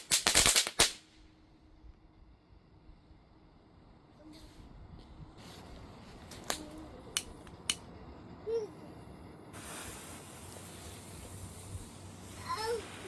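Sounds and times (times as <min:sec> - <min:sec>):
firework hissing: 0:00.0 - 0:01.3, 0:09.5 - 0:13.0.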